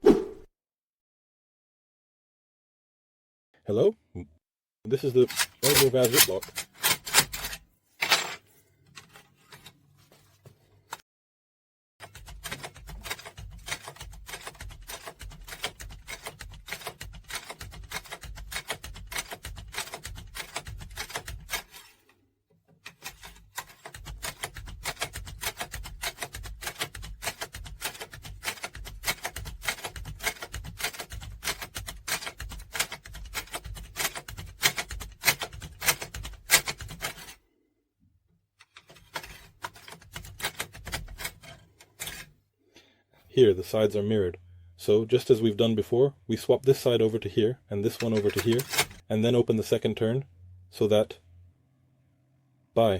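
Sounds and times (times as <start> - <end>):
lock pick clicking and scraping: 5.2 - 9.8, 12.0 - 22.1, 22.7 - 37.4, 38.6 - 42.3, 48.0 - 49.0.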